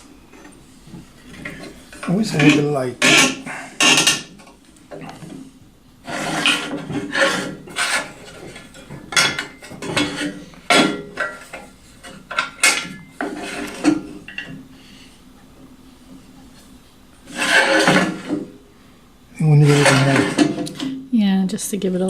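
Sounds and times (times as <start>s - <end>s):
wood and tools knocking: 0.4s - 5.5s.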